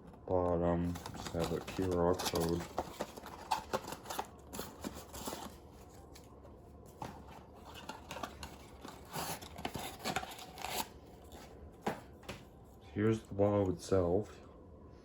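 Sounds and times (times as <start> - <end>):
cardboard box rustling and clicking: 0.8 - 5.6, 6.9 - 10.8.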